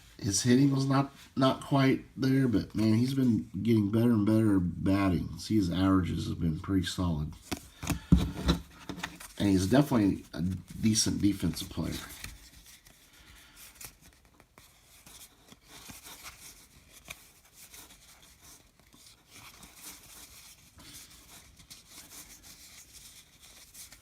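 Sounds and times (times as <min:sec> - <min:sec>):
cards and wrapper rustling: 0:07.4 - 0:24.0.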